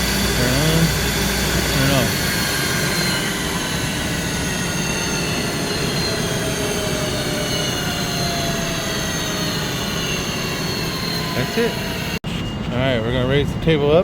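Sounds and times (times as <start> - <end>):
grinder whirring and whining: 0.0 - 14.0.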